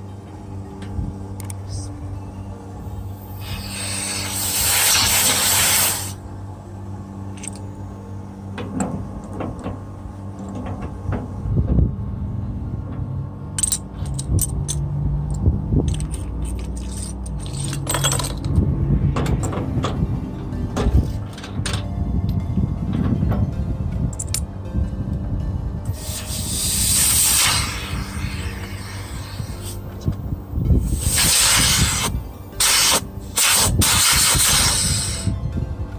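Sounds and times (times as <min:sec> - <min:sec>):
steady low hum: 0:00.0 - 0:35.9
hissing: 0:03.4 - 0:06.2
metallic clicks of tools: 0:07.4 - 0:07.7, 0:13.6 - 0:20.0.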